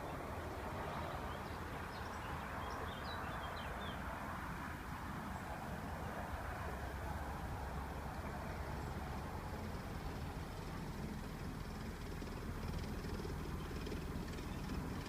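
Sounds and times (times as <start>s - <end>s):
boat engine running: 6.3s - 15.0s.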